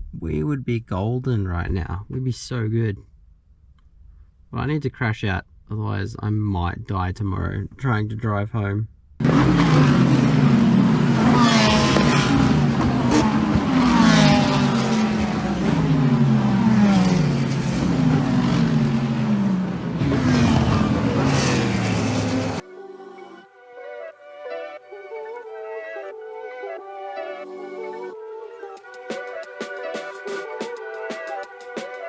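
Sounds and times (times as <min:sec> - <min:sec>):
race cars passing at speed: 0:09.2 - 0:22.6.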